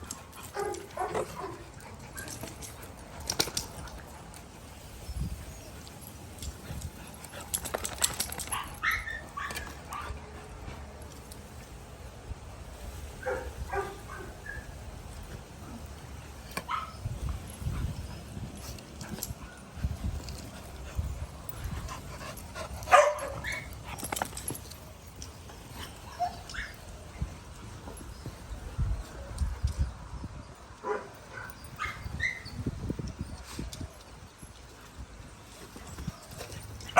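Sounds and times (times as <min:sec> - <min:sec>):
small clicks and knocks: 0:00.0 - 0:04.5, 0:05.8 - 0:10.0
small dogs barking and yipping: 0:00.2 - 0:02.5, 0:07.8 - 0:10.2, 0:13.2 - 0:14.8, 0:16.5 - 0:18.1, 0:19.0 - 0:24.8, 0:25.7 - 0:27.2, 0:30.8 - 0:32.8.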